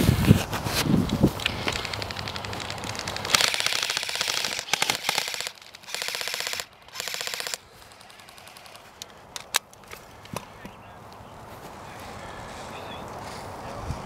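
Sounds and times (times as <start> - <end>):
airsoft guns firing full-auto: 2.0 - 8.8.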